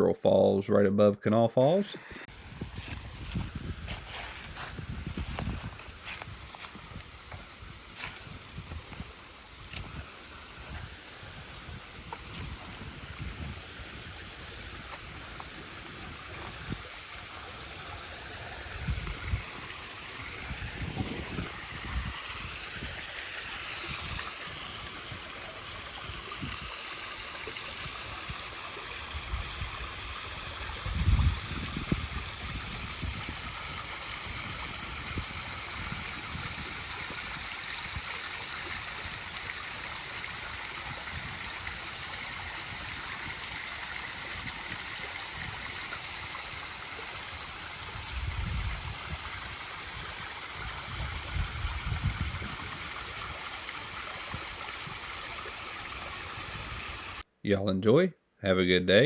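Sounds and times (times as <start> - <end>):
waterfall rushing: 12.3 - 29.1.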